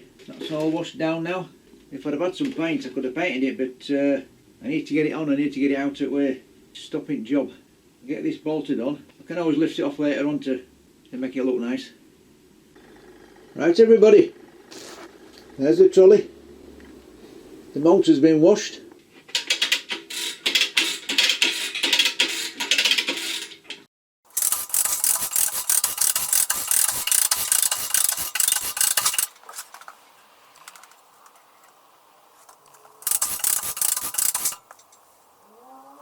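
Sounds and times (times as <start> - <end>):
rough scraping and rubbing: 24.3 - 29.4, 33.0 - 34.8.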